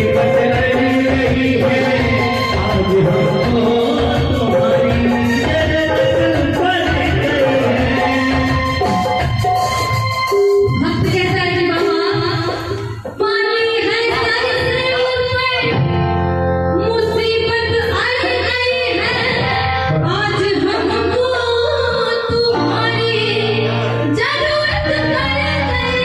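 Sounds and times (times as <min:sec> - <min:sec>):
sustained instrumental accompaniment: 0:00.0 - 0:26.0
woman singing devotional song: 0:10.8 - 0:15.8, 0:16.8 - 0:26.0.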